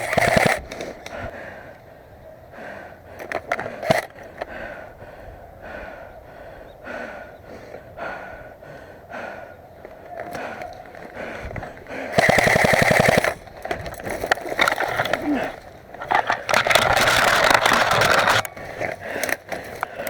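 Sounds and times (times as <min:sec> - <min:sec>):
sharp clicks: 0:00.0 - 0:01.2, 0:10.1 - 0:20.0
person breathing hard in puffs: 0:00.6 - 0:20.0
movement noise: 0:09.7 - 0:20.0.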